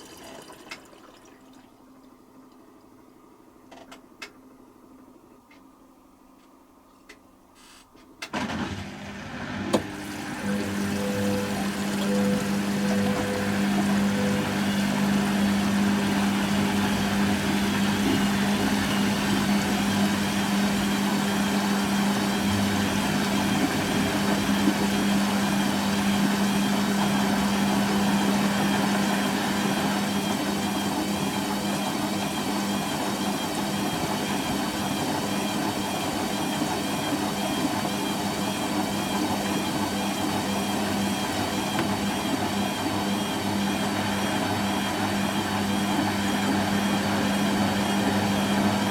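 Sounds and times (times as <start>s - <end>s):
washing machine motor hum: 8.2s - 48.9s
water noise: 9.7s - 35.2s.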